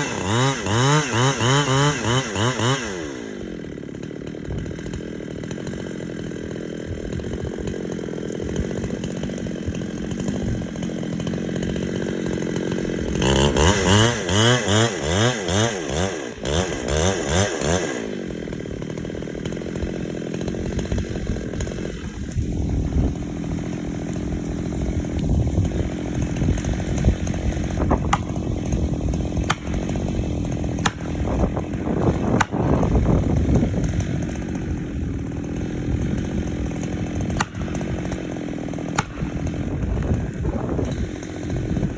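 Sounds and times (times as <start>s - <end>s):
chainsaw cutting wood: 0.0s - 41.9s.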